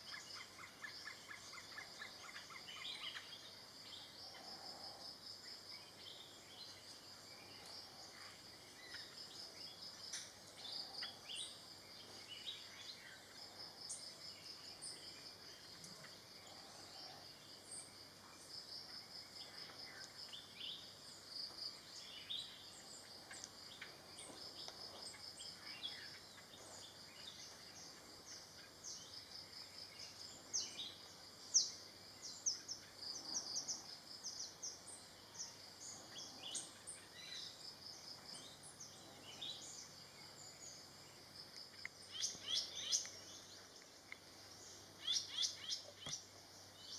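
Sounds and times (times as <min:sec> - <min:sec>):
bird chirps: 0:41.8 - 0:43.8, 0:44.5 - 0:46.9.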